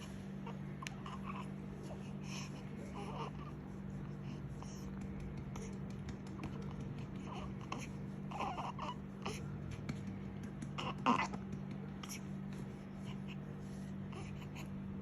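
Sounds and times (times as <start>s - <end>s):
baby fussing: 7.1s - 9.5s, 10.8s - 11.4s, 14.1s - 14.7s.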